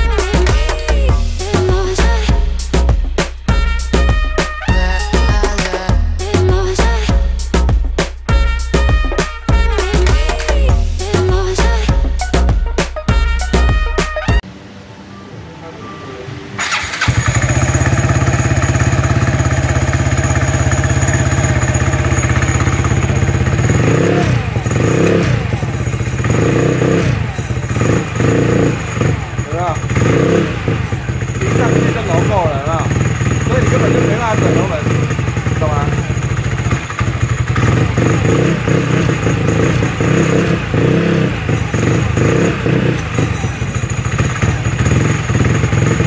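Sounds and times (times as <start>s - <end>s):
scooter engine idling: 16.6s - 46.0s.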